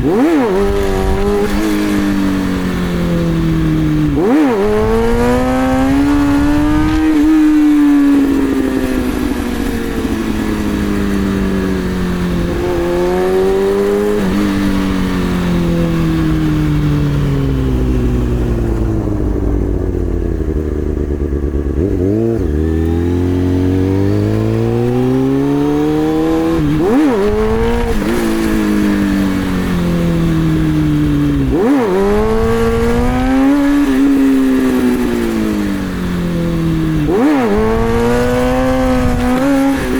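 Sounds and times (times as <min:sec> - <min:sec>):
engine throttle blips: 0:00.0 - 0:39.9
motorcycle engine revving: 0:00.0 - 0:39.9.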